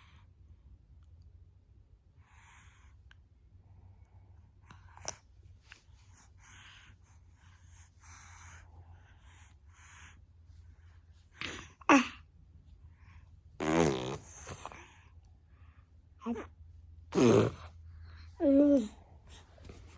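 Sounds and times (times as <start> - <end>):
baby sneezing: 11.4 - 12.2, 13.6 - 14.7, 17.2 - 17.7.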